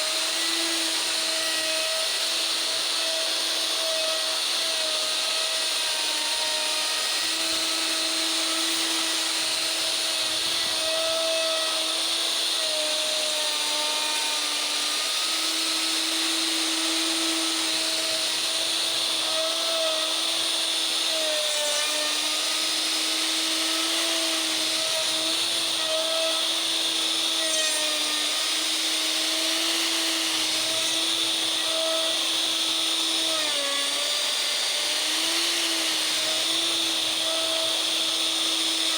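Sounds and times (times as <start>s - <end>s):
router motor whining: 0.0s - 38.9s.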